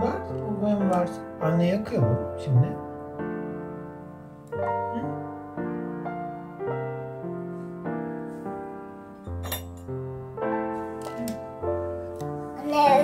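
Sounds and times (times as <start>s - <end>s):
soft piano music: 0.0s - 13.0s.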